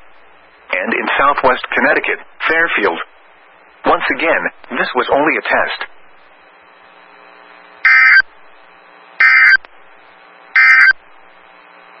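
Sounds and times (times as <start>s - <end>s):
faint radio hiss: 0.0s - 12.0s
buzzing digital tone bursts: 7.8s - 8.2s, 9.2s - 9.6s, 10.5s - 11.0s.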